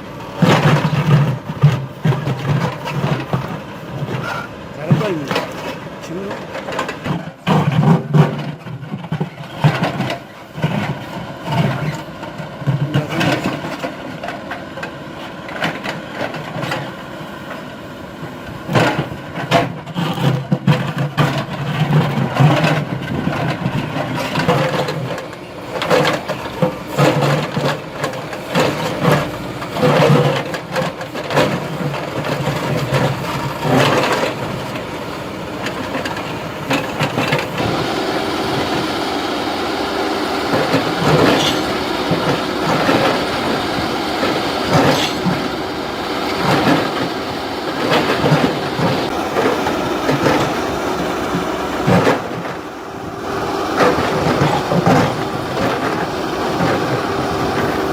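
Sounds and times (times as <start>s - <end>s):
backhoe diesel engine running: 0.0s - 57.9s
metal knocks and clanks: 44.2s - 45.5s.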